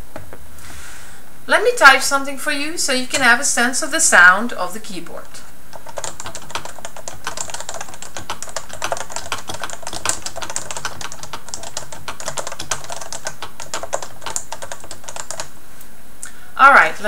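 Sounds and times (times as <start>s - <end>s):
fast keyboard typing: 5.7s - 15.5s.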